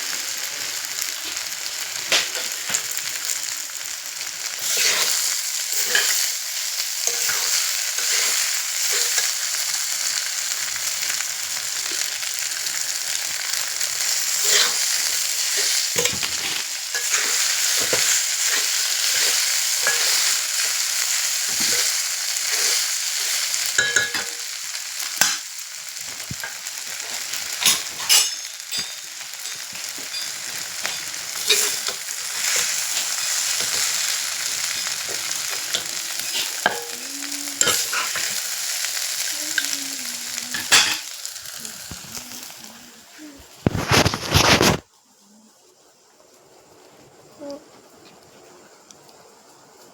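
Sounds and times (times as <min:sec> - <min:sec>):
fish sizzling in a frying pan: 0:00.0 - 0:45.0
spatula scraping and tapping pan: 0:14.2 - 0:20.8, 0:21.5 - 0:24.4, 0:26.1 - 0:37.0.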